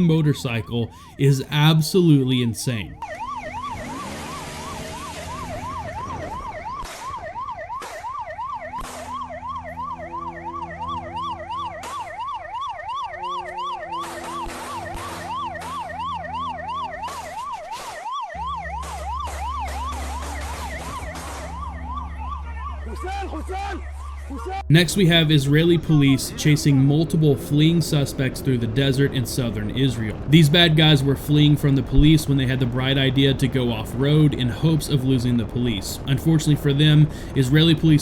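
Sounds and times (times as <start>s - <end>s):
police siren yelp: 0.0s - 38.0s
sharp cracks: 3.0s - 9.6s, 13.0s - 23.1s.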